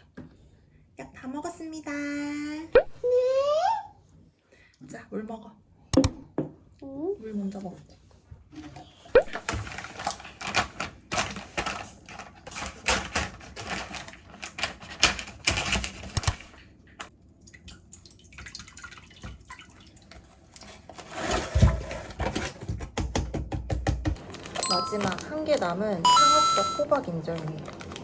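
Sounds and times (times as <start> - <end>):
small hard objects clattering: 24.2 - 26.0.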